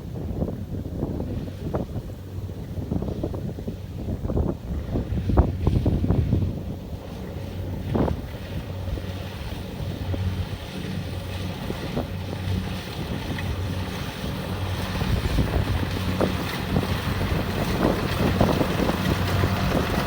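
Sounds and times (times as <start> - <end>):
wind on microphone: 0.0 - 20.0
combine harvester diesel engine: 8.8 - 20.0.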